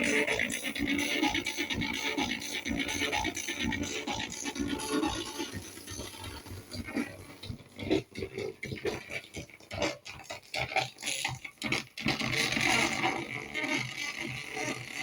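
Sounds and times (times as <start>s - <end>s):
distorted record player audio: 0.0s - 15.0s.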